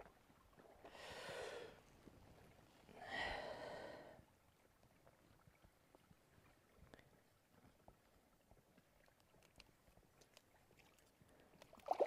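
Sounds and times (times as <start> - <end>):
person breathing softly: 0.8 - 1.9, 2.9 - 4.2
faint small ticks: 6.8 - 11.8.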